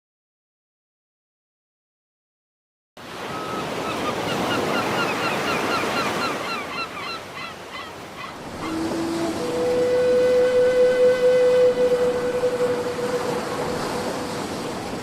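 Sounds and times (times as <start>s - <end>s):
sea waves washing ashore: 3.0s - 15.0s.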